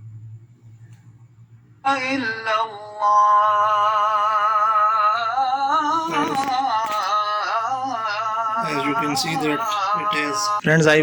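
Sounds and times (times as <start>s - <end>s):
person singing with music: 1.9s - 10.6s.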